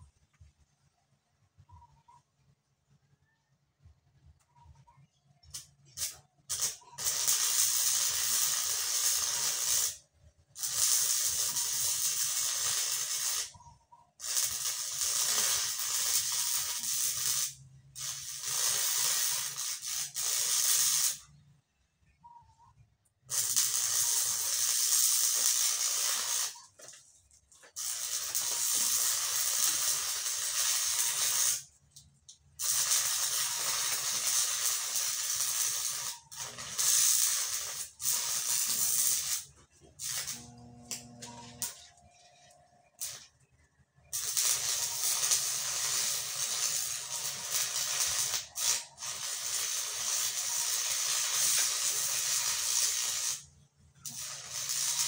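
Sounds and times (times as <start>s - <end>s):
electric arc welding hiss: 5.5s - 10.0s, 10.6s - 13.6s, 14.2s - 21.3s, 23.3s - 27.0s, 27.6s - 31.7s, 32.6s - 41.8s, 43.0s - 43.3s, 44.1s - 55.0s.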